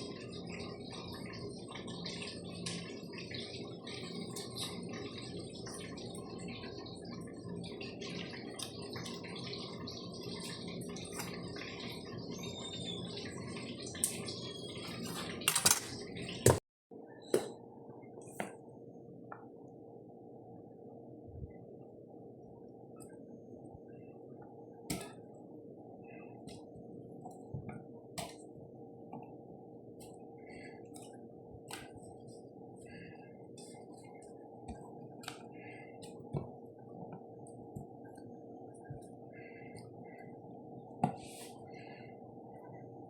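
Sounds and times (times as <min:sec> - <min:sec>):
steady background hum: 0:00.0 - 0:43.0
utensils and dishes clinking: 0:14.9 - 0:16.6.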